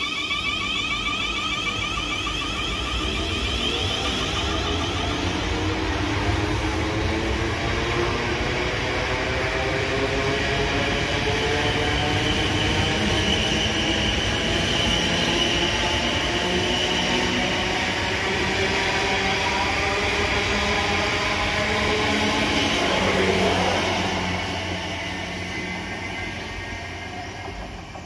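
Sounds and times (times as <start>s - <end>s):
higher whine: 0.0s - 6.4s
whining tones: 0.0s - 6.4s
train rumbling: 0.0s - 28.0s.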